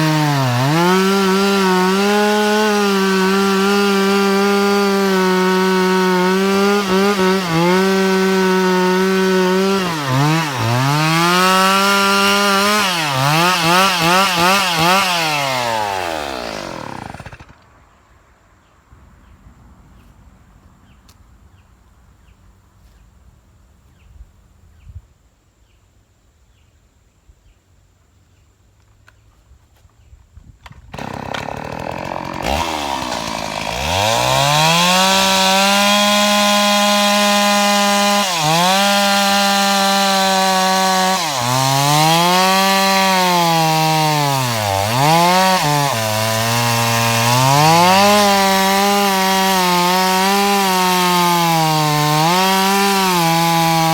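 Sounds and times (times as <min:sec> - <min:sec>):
chainsaw revving: 0:00.0 - 0:17.6, 0:30.9 - 0:53.9.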